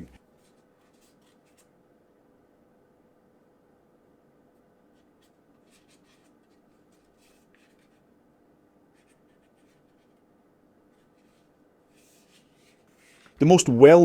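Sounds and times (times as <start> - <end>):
soft scratches: 0.4 - 1.7, 4.9 - 8.1, 8.9 - 13.4.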